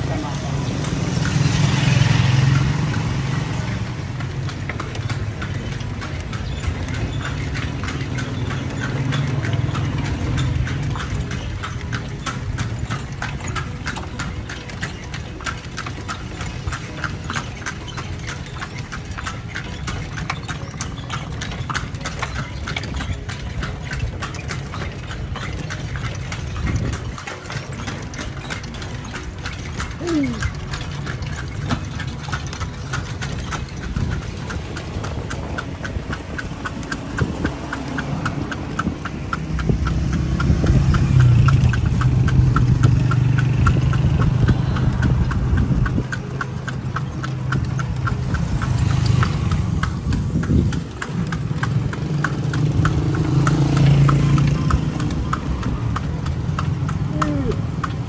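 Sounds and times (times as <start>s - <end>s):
horse hooves clip-clopping on pavement: 0.0s - 58.0s
low motor engine rumble: 23.1s - 58.0s.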